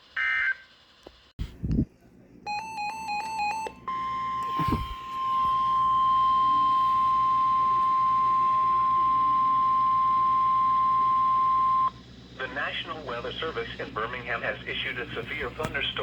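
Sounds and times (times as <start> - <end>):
long steady alarm tone: 2.5 - 12.6.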